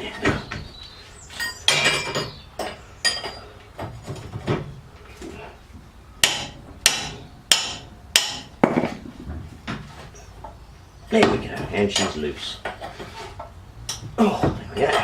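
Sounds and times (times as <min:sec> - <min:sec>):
hammer striking metal: 0:06.2 - 0:08.8
metal knocks and clanks: 0:06.2 - 0:10.0.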